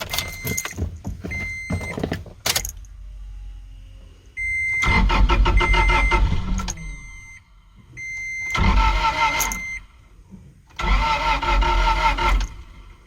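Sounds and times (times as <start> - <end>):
engine cranking on starter: 4.8 - 6.8, 8.4 - 9.7, 10.7 - 12.9.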